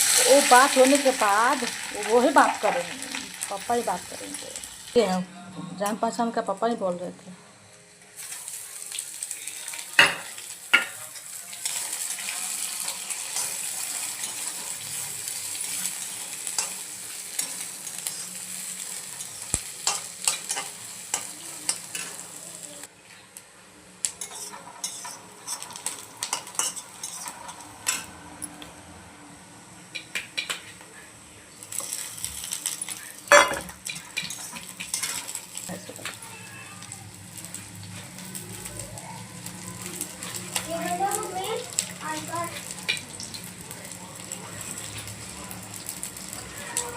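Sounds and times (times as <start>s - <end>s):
rice sizzling in a pan: 0.0s - 5.2s, 8.0s - 28.2s, 29.4s - 46.9s
metal spatula scraping a pan: 24.2s - 28.1s.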